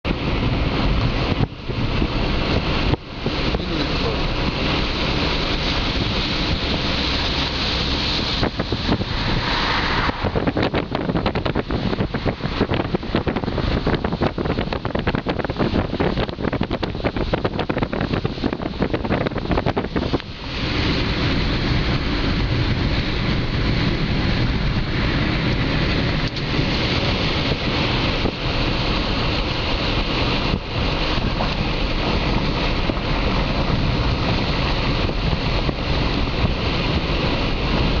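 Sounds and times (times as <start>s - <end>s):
road noise: 0.0s - 38.0s
wind buffeting microphone: 0.1s - 38.0s.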